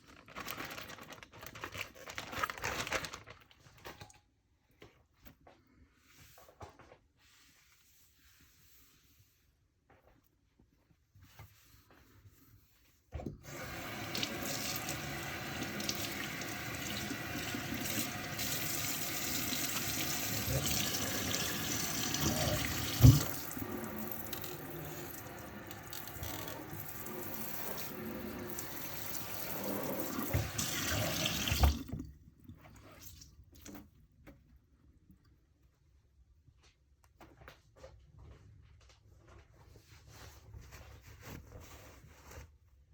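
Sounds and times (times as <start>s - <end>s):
tap water running into sink: 13.4s - 32.1s
water splashing over dishes: 13.5s - 32.0s
hard object clunking in sink: 22.3s - 23.4s.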